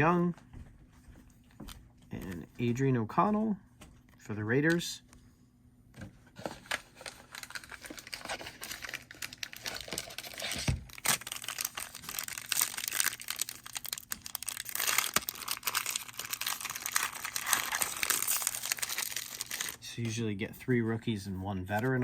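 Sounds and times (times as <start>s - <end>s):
plastic wrapper tearing: 6.5s - 19.8s.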